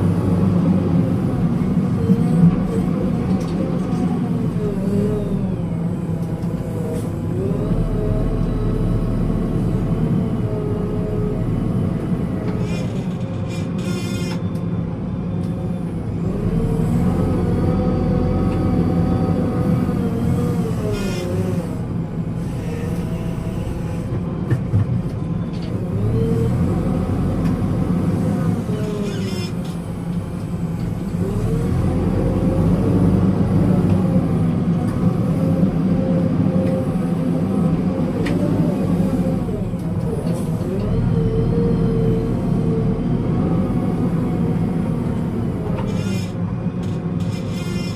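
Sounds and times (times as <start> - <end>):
diesel engine revving: 15.9 - 24.3, 25.8 - 29.1, 29.8 - 46.5.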